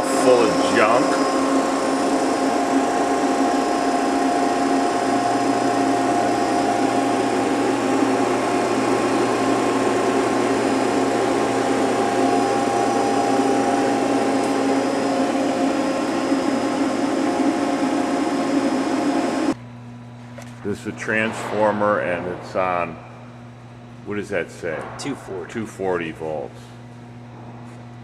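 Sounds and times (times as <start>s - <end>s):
lower machine hum: 0.0s - 28.0s
machine hydraulic hum: 0.0s - 28.0s.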